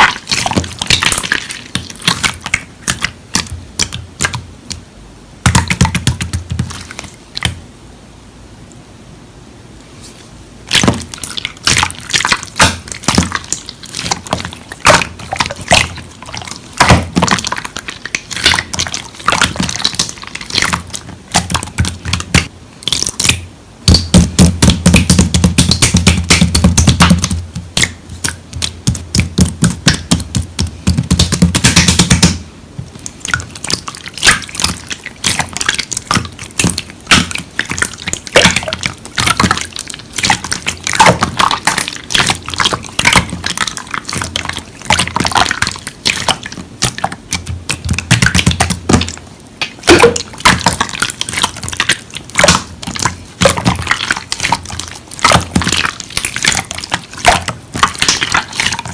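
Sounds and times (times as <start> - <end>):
slime squishing wet clicks: 0.0 - 4.8, 10.7 - 58.9.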